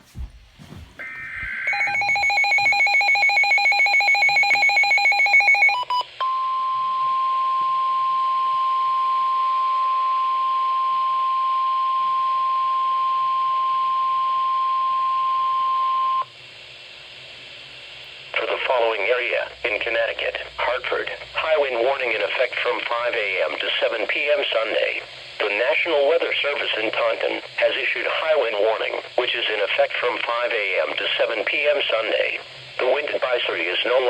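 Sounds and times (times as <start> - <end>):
steady alarm tone: 0.7 - 5.9.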